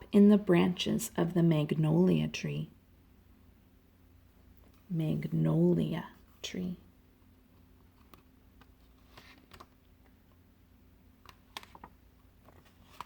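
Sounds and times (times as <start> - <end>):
book pages rustling: 7.9 - 9.8, 11.2 - 13.0.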